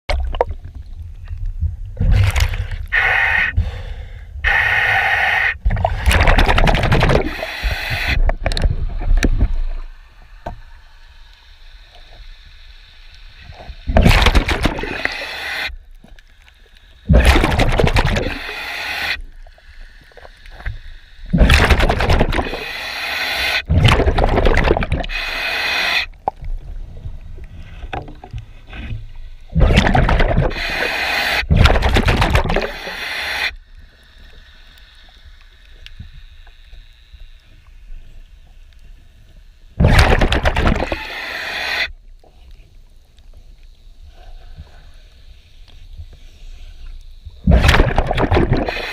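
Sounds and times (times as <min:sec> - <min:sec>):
underwater scrubbing and scraping: 0:00.1 - 0:11.1, 0:11.7 - 0:36.3, 0:39.6 - 0:44.9, 0:45.5 - 0:48.9
gurgling bubbles: 0:01.9 - 0:03.0, 0:05.6 - 0:09.5, 0:13.9 - 0:15.2, 0:17.0 - 0:18.6, 0:21.3 - 0:22.7, 0:23.6 - 0:25.3, 0:29.5 - 0:33.0, 0:39.8 - 0:41.2, 0:47.4 - 0:48.9.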